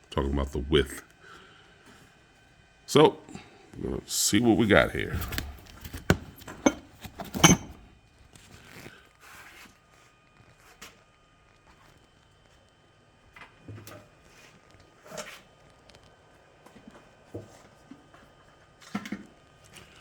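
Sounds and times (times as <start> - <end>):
cardboard rustling: 4.7 - 9.8.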